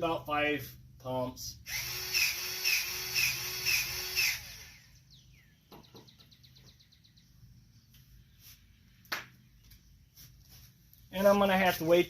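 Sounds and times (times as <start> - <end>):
powered grease gun pumping: 1.6 - 5.0.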